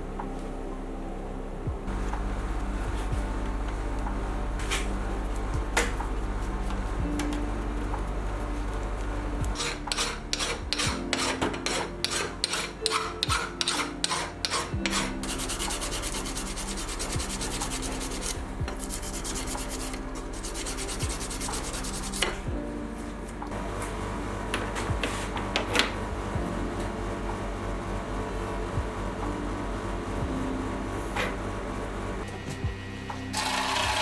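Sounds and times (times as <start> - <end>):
background music: 0.0 - 34.0
steady scraping noise: 1.9 - 30.4
hand file strokes on metal: 9.5 - 22.4.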